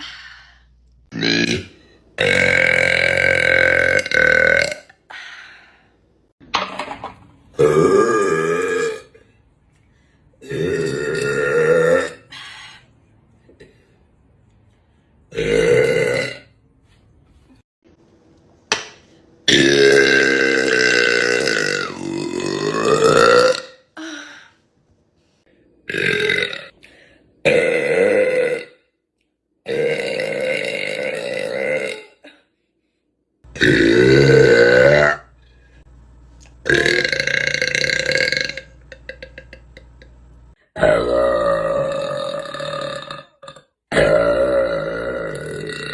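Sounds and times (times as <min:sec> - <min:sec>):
woman burping loudly: 0:01.1 - 0:05.0, 0:07.6 - 0:09.2, 0:10.4 - 0:12.3, 0:15.3 - 0:16.5, 0:19.5 - 0:24.2, 0:25.9 - 0:26.8, 0:27.4 - 0:28.9, 0:29.6 - 0:32.4, 0:33.5 - 0:35.3, 0:36.6 - 0:40.1, 0:40.8 - 0:45.9.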